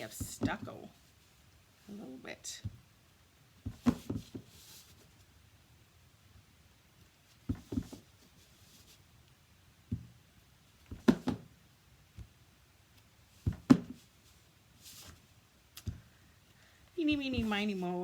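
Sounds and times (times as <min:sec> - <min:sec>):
stamp knocking on table: 0:13.5 - 0:14.0.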